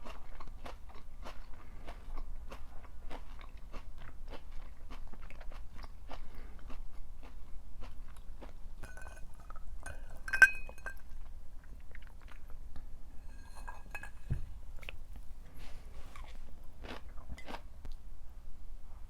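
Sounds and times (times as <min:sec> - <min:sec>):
close-up chewing: 0:00.0 - 0:18.0
tableware clinking: 0:08.8 - 0:11.1, 0:13.2 - 0:14.5.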